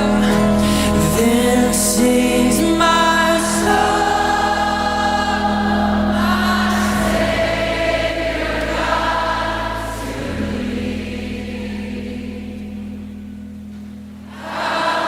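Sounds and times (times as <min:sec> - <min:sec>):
choir singing held chords: 0:00.0 - 0:15.0
steady bass note: 0:03.6 - 0:14.3.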